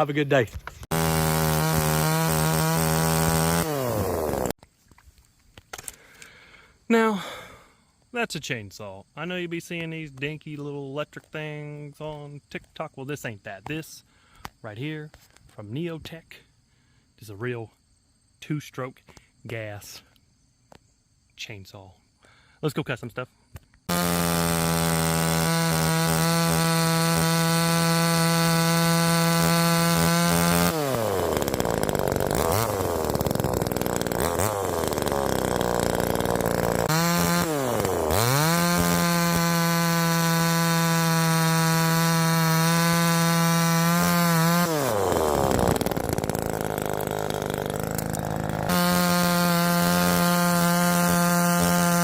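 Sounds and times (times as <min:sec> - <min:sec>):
chainsaw cutting limbs: 0:00.0 - 0:04.6, 0:23.8 - 0:52.0.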